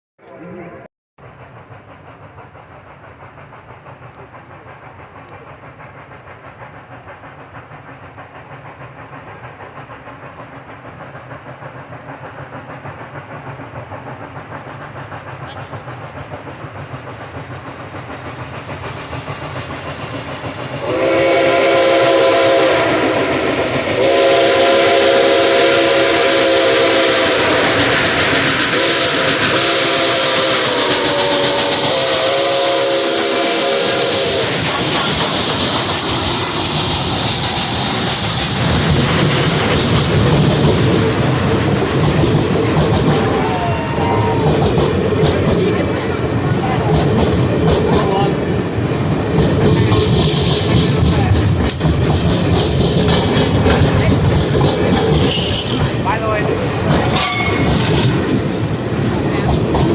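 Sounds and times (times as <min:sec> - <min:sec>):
steam hiss: 0:01.2 - 0:59.9
steam locomotive exhaust chuffing: 0:01.2 - 0:59.9
steam whistle chord: 0:20.8 - 0:34.6.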